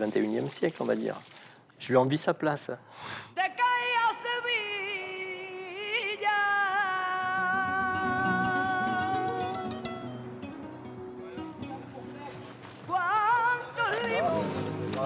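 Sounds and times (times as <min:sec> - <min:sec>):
lower musical accompaniment: 0:08.0 - 0:15.0.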